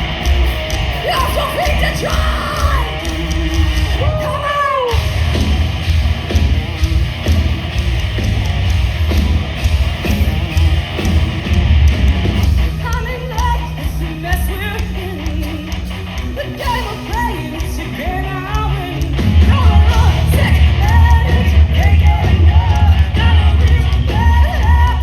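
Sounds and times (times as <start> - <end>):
hard rock band playing: 0.0 - 25.0
person singing: 1.0 - 5.0, 12.7 - 25.0.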